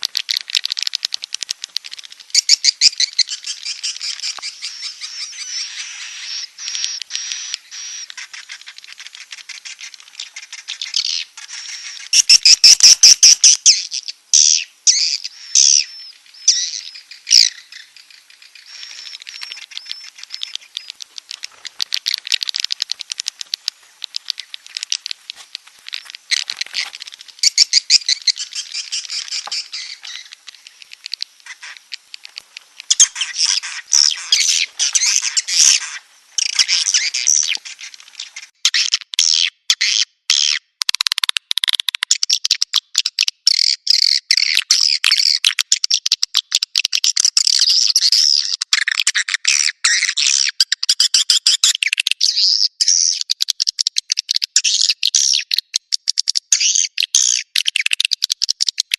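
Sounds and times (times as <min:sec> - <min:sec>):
swiftlets chirping and twittering: 0:00.0 - 0:38.6.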